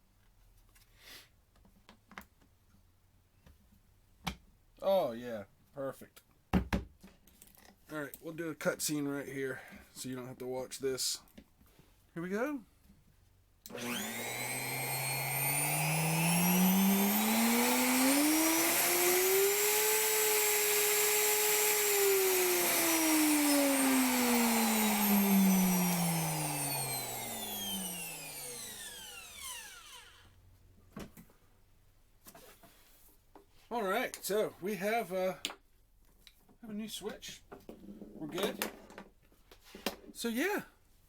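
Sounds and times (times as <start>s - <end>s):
router motor whine: 13.7s - 30.3s.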